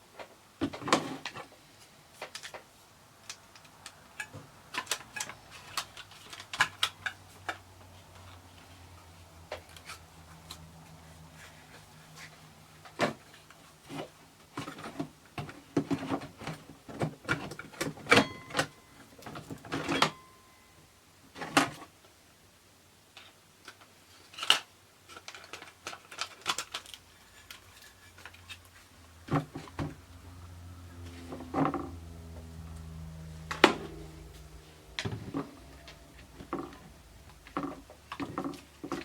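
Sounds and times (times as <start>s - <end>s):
plastic and metal parts clicking: 23.6s - 28.8s.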